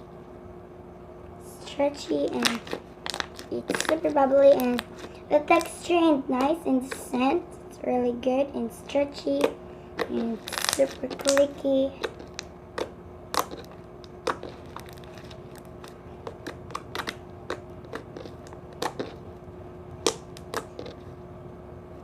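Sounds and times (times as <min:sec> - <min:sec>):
slime squeezed clicking and popping: 0:09.4 - 0:19.2, 0:20.0 - 0:21.0.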